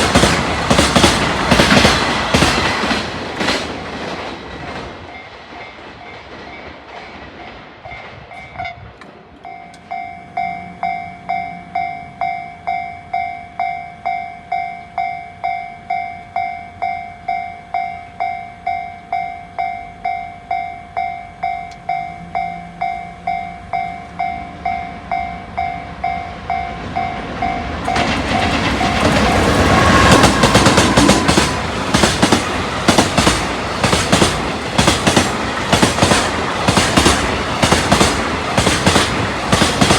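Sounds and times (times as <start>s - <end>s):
train wheels clattering over rail joints: 0.0s - 10.0s, 26.8s - 39.9s
level crossing bell ringing: 9.4s - 28.0s.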